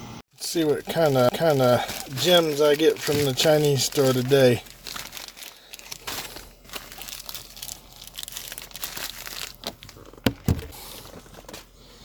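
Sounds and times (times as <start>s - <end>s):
package wrapping crinkling: 0.5s - 11.6s
package being torn open: 1.0s - 10.3s.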